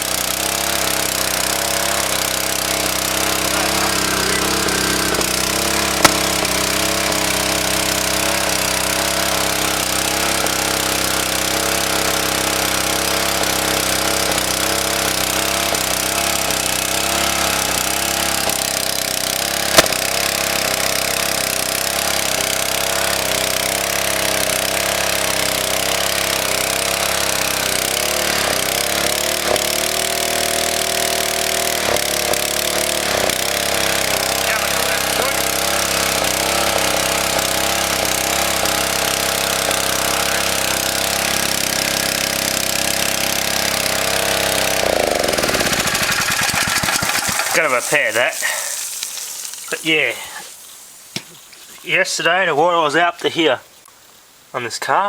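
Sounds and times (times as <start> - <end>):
water pump engine running: 0.0 - 52.2
sharp knocks: 6.0 - 6.6, 19.7 - 20.4.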